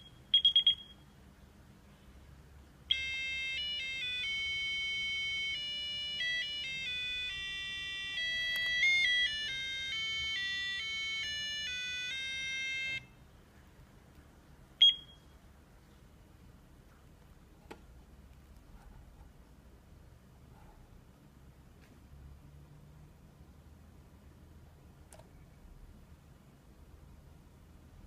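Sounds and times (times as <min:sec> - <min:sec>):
electronic alarm melody: 0:00.0 - 0:00.9, 0:02.9 - 0:13.1.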